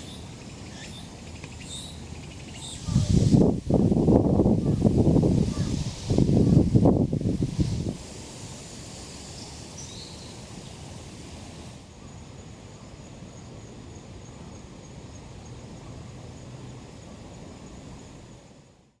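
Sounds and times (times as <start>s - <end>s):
steady outdoor background hiss: 0.0s - 19.0s.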